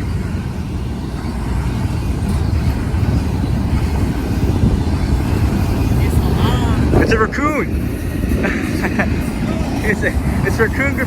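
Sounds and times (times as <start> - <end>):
freight train wheels rumbling: 0.0 - 11.0.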